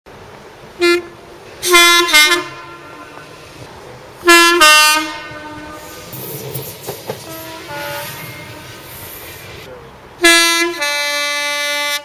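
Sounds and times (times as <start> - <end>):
train two-tone horn: 0.8 - 3.6, 4.2 - 6.2, 7.2 - 9.0, 10.2 - 12.0.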